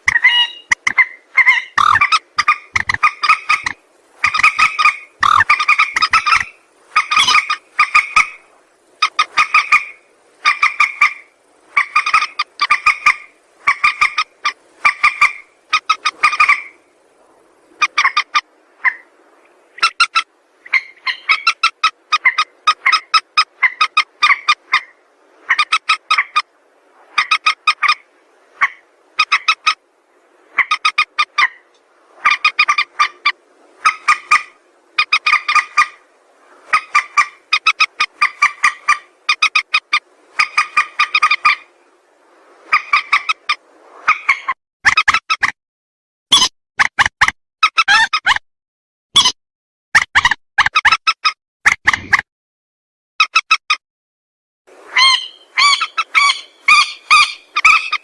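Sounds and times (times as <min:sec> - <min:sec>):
bird calling in rattling bursts: 0:00.0 - 0:08.4, 0:09.0 - 0:16.9, 0:32.2 - 0:36.0, 0:55.0 - 0:58.0.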